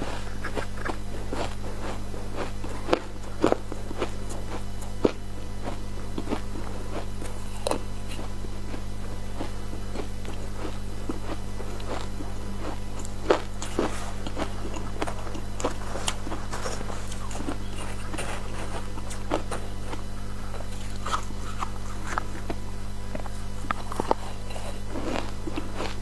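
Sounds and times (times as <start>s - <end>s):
ice being bitten and chewed: 0.0s - 8.8s, 9.4s - 26.0s
steady low hum: 0.0s - 26.0s.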